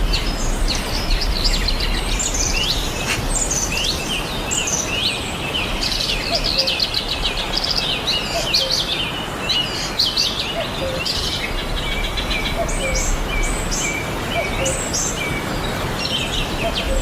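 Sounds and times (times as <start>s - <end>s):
small birds chirping: 0.0s - 17.0s.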